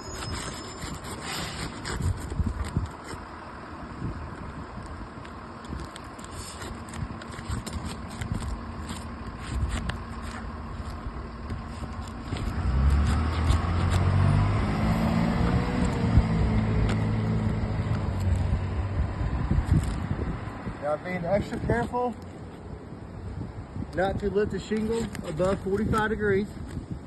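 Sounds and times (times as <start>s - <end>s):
roofing tool scraping under shingles: 0.0s - 3.3s, 5.7s - 14.1s, 24.6s - 26.9s
vehicle engine rumble: 0.0s - 27.0s.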